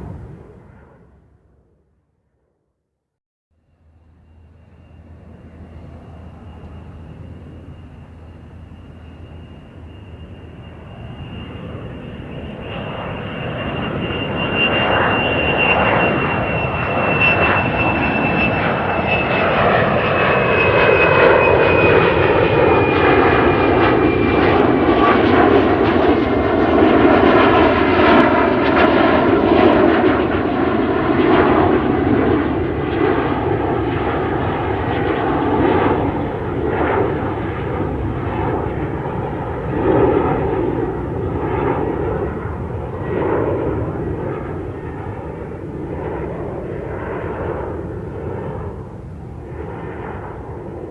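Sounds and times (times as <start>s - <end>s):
airplane engine: 0.0s - 2.7s, 3.6s - 50.9s
high whine falling in pitch: 3.6s - 29.3s.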